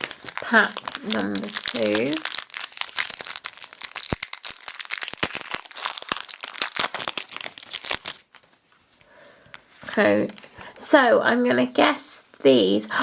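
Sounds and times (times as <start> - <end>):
foil wrapper crinkling: 0.0 - 9.0.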